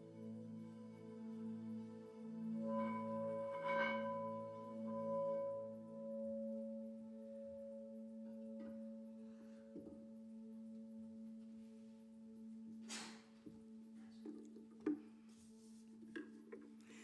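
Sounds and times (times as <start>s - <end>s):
singing bowl ringing: 2.4s - 13.0s.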